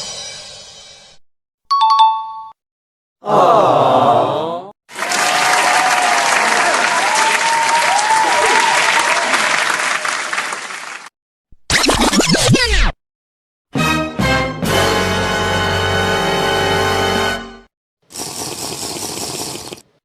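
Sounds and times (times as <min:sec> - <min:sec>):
crowd applause: 0:04.9 - 0:11.1.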